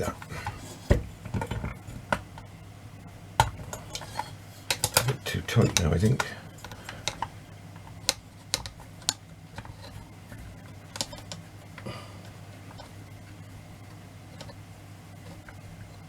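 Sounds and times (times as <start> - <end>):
steady low hum: 0.0 - 16.0
small metal parts clicking: 3.7 - 10.0, 10.8 - 11.5.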